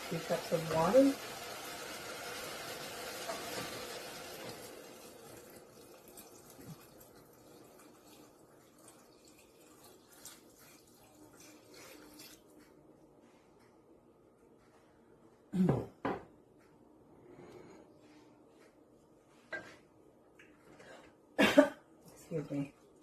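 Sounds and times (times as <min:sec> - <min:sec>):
water sizzling and bubbling in pot: 0:00.0 - 0:12.6.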